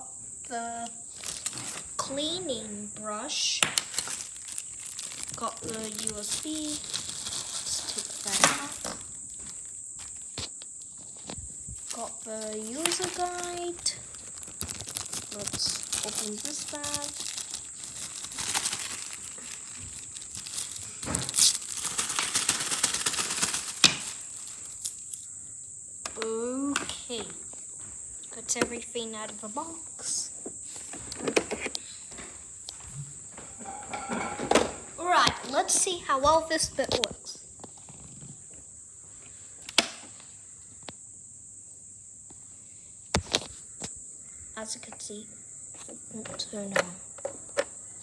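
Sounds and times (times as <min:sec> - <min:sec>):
high-pitched hiss: 0:00.0 - 0:31.1
plastic bag crinkling: 0:01.0 - 0:02.4, 0:03.6 - 0:25.2.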